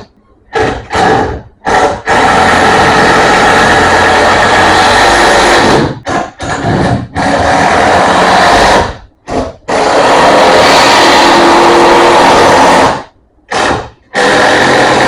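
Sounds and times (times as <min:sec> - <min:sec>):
power tool running in bursts: 0:00.9 - 0:09.0, 0:09.7 - 0:15.0.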